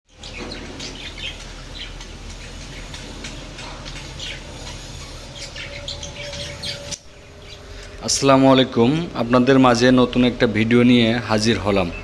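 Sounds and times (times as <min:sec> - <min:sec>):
budgerigars chirping: 0:00.1 - 0:08.0
low steady hum: 0:00.1 - 0:12.0.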